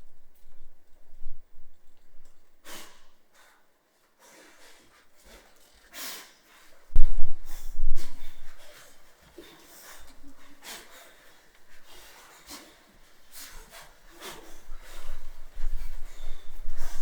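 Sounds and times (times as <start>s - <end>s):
breathy puffs and snorts: 4.3s - 17.0s.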